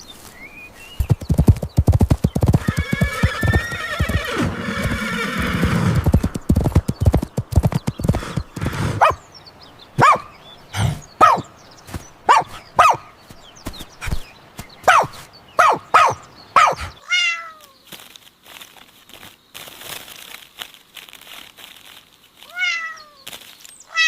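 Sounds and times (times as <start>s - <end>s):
hoofbeats clip-clopping: 1.0s - 9.2s
horse whinnying: 2.3s - 6.4s.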